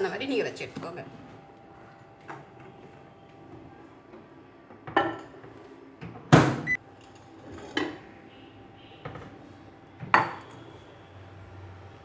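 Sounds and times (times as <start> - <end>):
microwave door knocking shut: 6.3 - 6.7.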